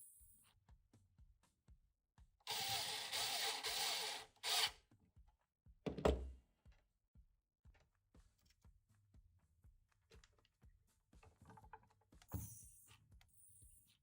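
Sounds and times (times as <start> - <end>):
small motor whirring: 2.5 - 4.7.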